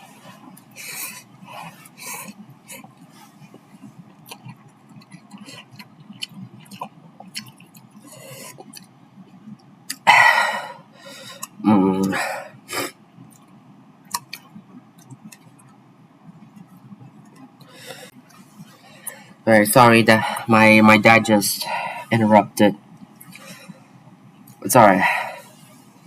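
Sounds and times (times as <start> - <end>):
noodles chewed and slurped: 0.0 - 10.0
wet eating clicks: 0.5 - 10.1, 11.3 - 12.2, 13.2 - 18.4.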